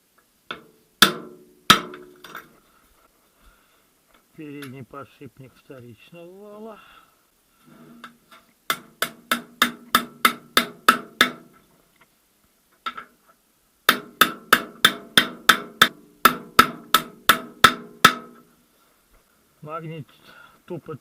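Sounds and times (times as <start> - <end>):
hammer tapping on metal: 0.5 - 2.4, 8.7 - 11.6, 13.9 - 18.5.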